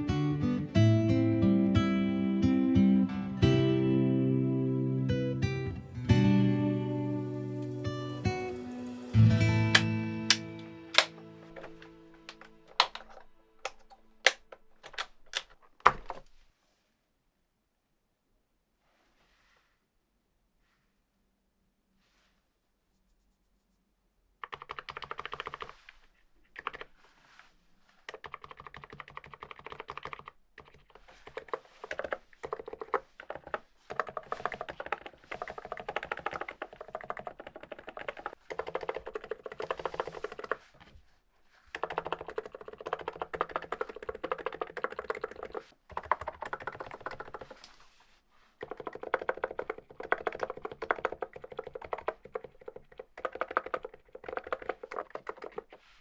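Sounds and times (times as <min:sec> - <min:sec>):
keyboard key clacks: 0:09.7 - 0:16.3.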